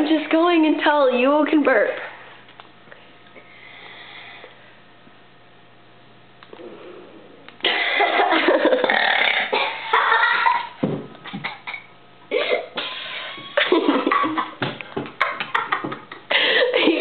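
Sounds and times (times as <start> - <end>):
person burping: 8.6 - 9.8.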